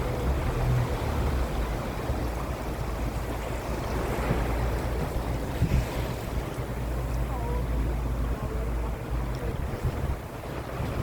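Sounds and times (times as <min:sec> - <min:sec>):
low engine drone: 0:00.0 - 0:11.0
tyre and wind noise: 0:03.9 - 0:06.6.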